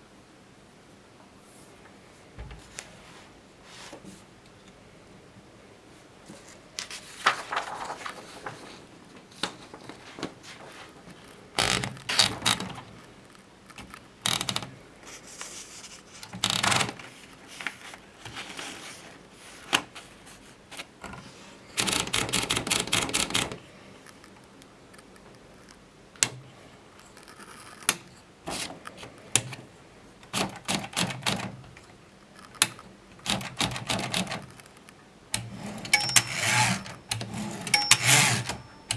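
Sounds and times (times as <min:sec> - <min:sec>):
typewriter keys clicking: 0:11.2 - 0:14.8, 0:16.2 - 0:17.4, 0:21.8 - 0:25.5, 0:30.2 - 0:38.9.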